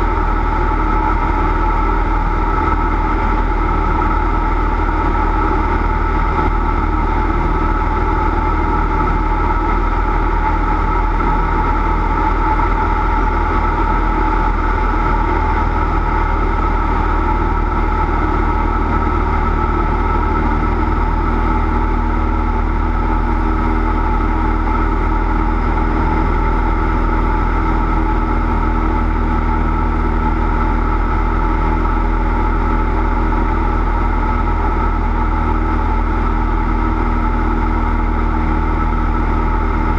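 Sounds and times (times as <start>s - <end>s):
propeller plane engine droning: 0.0s - 39.9s.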